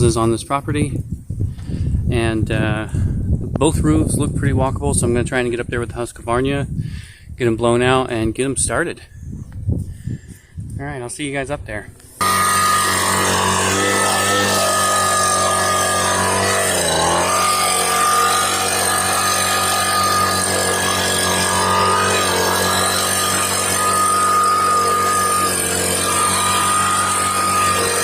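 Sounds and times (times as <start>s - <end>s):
leaf blower running: 12.0s - 28.0s.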